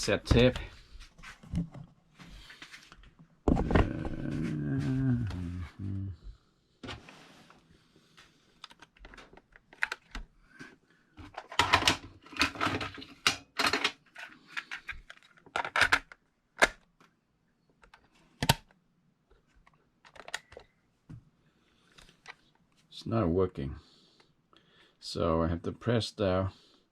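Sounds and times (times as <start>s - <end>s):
cassette recorder plastic clicks: 8.6s - 10.3s, 17.8s - 18.8s, 19.6s - 20.7s.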